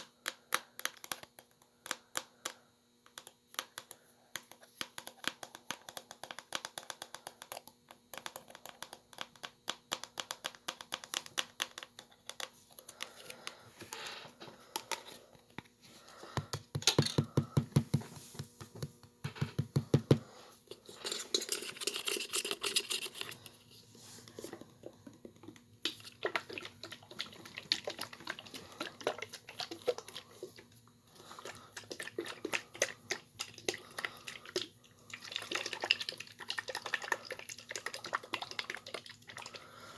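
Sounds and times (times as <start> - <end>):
laptop keys clicking: 0.0 - 13.6.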